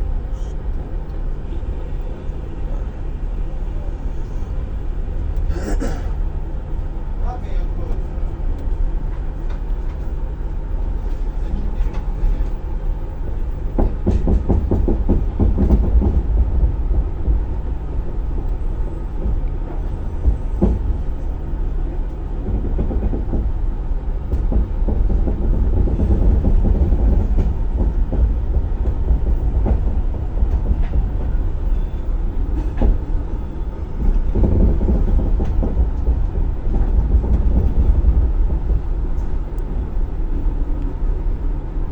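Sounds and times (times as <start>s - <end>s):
train rumbling on rails: 0.0s - 41.9s
wheel clacks over rail joints: 24.3s - 39.4s.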